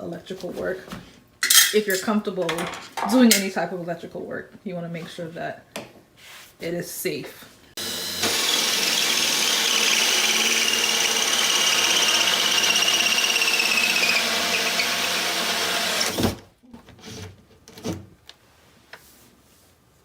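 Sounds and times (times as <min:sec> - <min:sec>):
power drill whining: 0:07.8 - 0:16.4.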